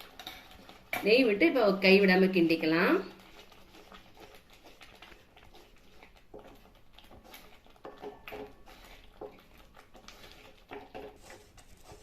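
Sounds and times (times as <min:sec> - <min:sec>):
spoon scraping and tapping pan: 0:06.3 - 0:09.4, 0:10.1 - 0:12.0.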